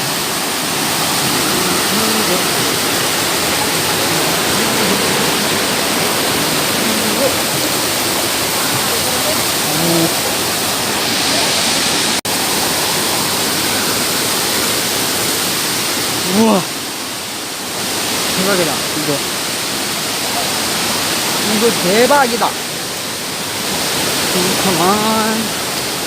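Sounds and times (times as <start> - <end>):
waterfall rushing: 0.0 - 26.0.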